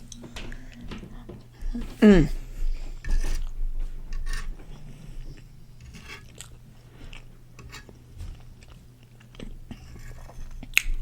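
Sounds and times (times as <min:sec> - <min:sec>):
person chewing crunchy food: 0:04.3 - 0:11.0.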